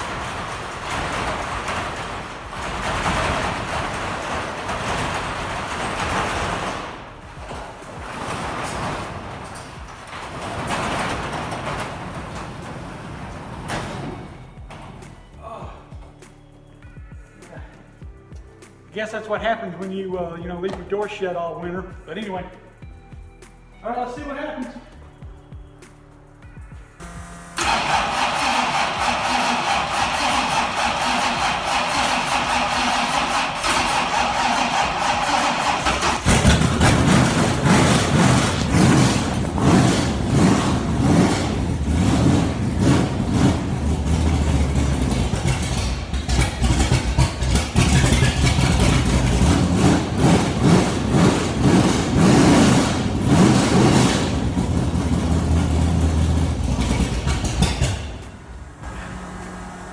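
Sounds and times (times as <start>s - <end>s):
engine running roughly: 0.0s - 15.4s, 27.0s - 59.9s
starter motor cranking: 27.0s - 59.9s.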